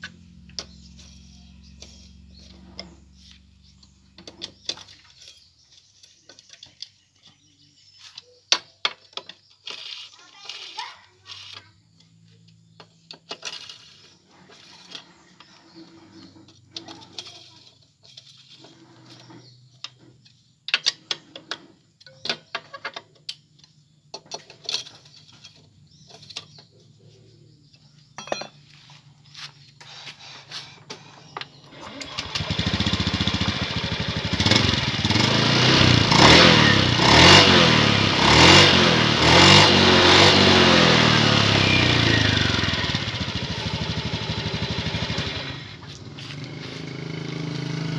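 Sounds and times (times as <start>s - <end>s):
scooter engine running: 0.0s - 4.9s, 31.1s - 47.9s.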